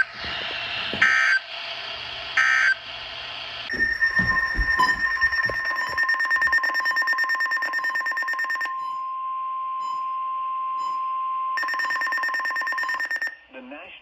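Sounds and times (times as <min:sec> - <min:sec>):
steady alarm tone: 0:03.7 - 0:08.6.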